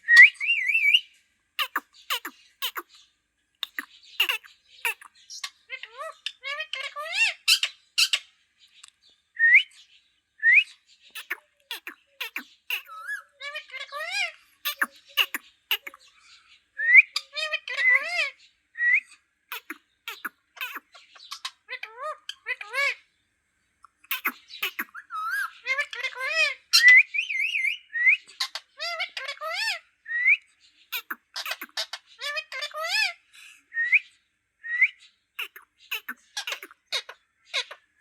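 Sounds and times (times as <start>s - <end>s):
parrot whistling: 1.6s - 2.8s, 3.6s - 5.1s, 14.7s - 16.0s
parrot whistling and chirping: 1.6s - 2.8s, 3.6s - 5.1s, 11.2s - 13.3s, 14.7s - 16.0s, 18.8s - 20.8s, 24.1s - 25.5s, 34.7s - 36.7s
parrot warbling chatter: 1.6s - 2.9s, 3.6s - 8.2s, 11.2s - 16.1s, 19.5s - 22.0s, 23.9s - 26.5s, 30.9s - 33.2s, 35.4s - 37.8s.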